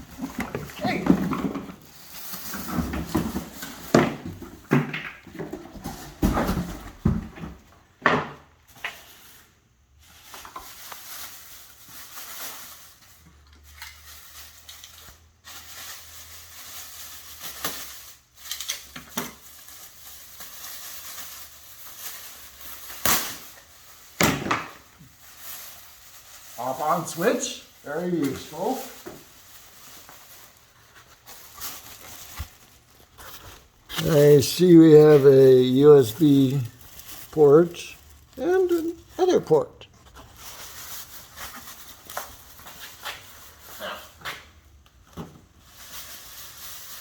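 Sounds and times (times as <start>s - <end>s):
packaging rustling: 10.1s - 43.8s.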